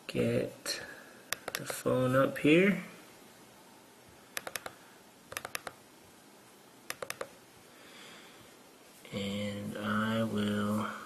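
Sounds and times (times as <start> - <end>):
computer mouse clicking: 1.3 - 1.8, 4.4 - 5.8, 6.9 - 7.4.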